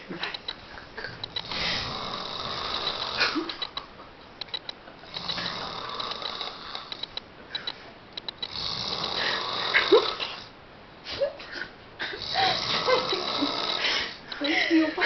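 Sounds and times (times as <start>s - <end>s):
person snoring with rasping breaths: 1.4s - 3.4s, 5.1s - 7.0s, 8.5s - 10.5s, 12.2s - 14.2s.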